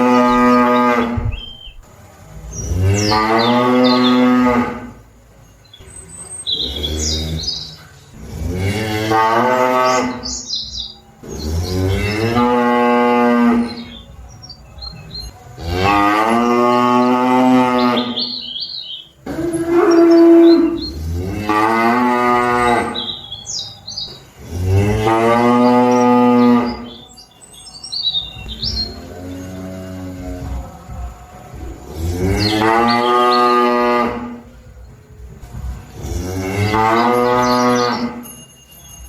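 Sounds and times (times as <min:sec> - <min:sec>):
cattle mooing: 0:00.0 - 0:01.8, 0:02.7 - 0:05.0, 0:08.2 - 0:10.4, 0:11.3 - 0:14.0, 0:15.6 - 0:23.4, 0:24.4 - 0:27.0, 0:31.8 - 0:34.4, 0:36.0 - 0:38.2.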